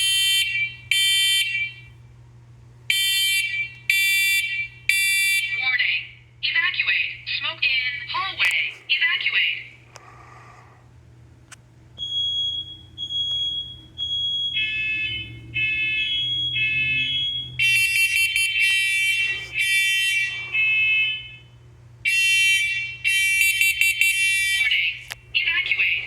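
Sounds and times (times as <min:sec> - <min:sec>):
smoke alarms beeping: 0:00.0 - 0:02.0, 0:02.9 - 0:05.9, 0:12.0 - 0:26.0.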